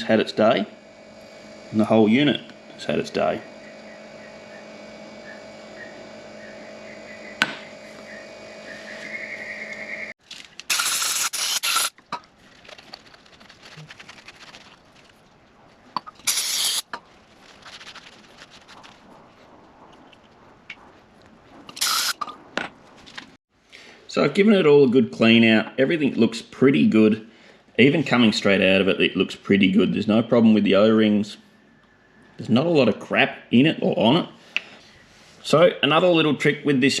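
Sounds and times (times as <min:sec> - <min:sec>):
steady electrical hum: 0:00.0 - 0:20.7, 0:21.5 - 0:23.4
hissing spray bursts: 0:16.2 - 0:16.8.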